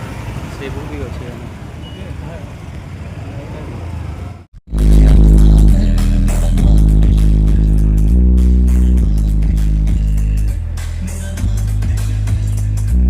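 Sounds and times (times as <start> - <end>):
electronic music with deep bass: 4.7 - 13.0.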